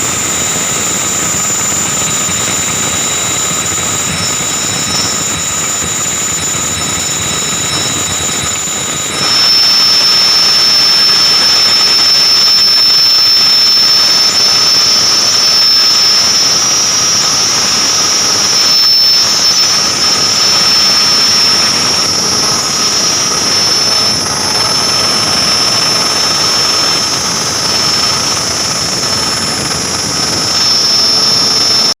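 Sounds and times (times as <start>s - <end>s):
fan belt whirring: 0.0s - 31.9s
high-pitched belt squeal: 0.0s - 32.0s.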